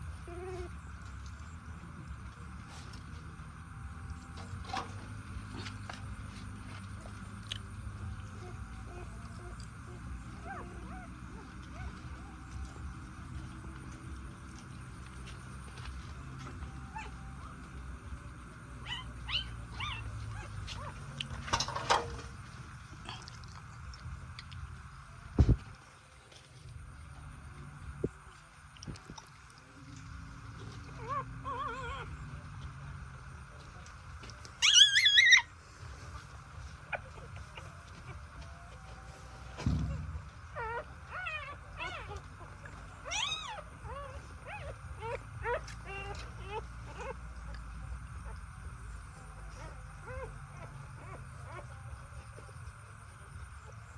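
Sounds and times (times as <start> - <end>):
steady low rumble: 0.0 - 34.7, 35.4 - 53.9
young animal crying: 34.6 - 47.5
low thump: 39.6 - 40.4.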